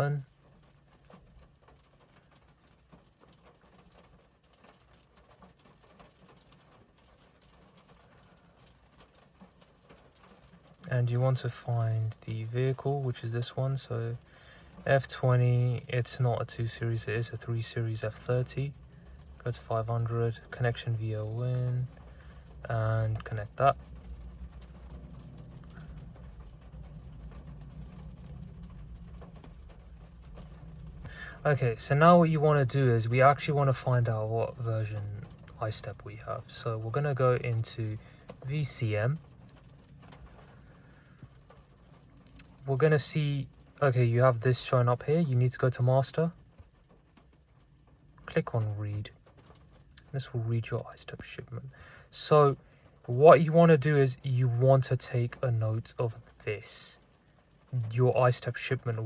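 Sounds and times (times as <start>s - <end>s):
low hum: 10.8s - 51.8s
faint ticks: 20.4s - 31.4s.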